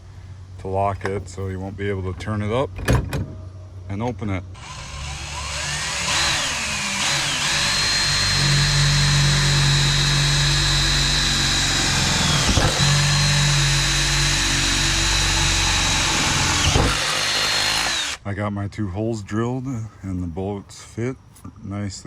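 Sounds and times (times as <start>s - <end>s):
electric drill boring metal: 4.6s - 18.2s.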